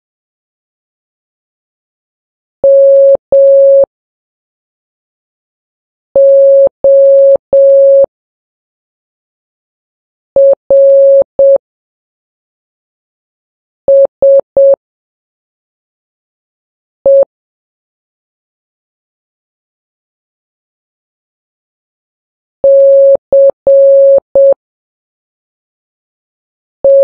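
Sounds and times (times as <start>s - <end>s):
morse code beeps: 2.6s - 3.9s, 6.2s - 8.1s, 10.4s - 11.6s, 13.9s - 14.8s, 17.1s - 17.3s, 22.6s - 24.6s.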